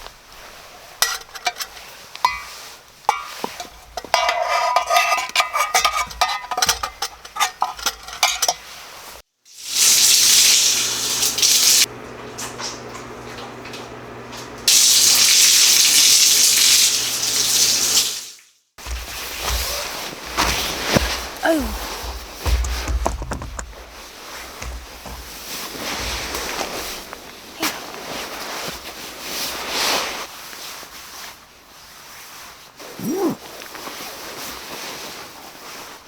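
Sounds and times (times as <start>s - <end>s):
cookware and utensils clattering: 1.0s - 9.0s, 18.8s - 28.3s
food sizzling in a pan: 9.5s - 12.2s, 13.5s - 18.4s.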